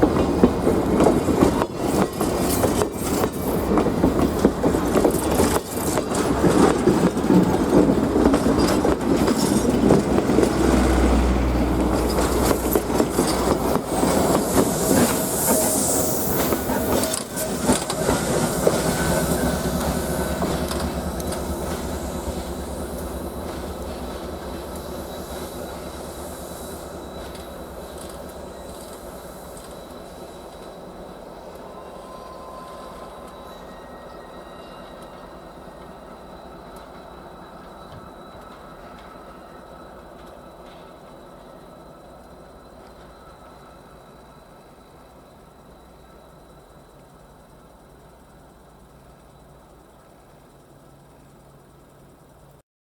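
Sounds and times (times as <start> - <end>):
train wheels clattering over rails: 0.0 - 31.7, 34.9 - 43.9.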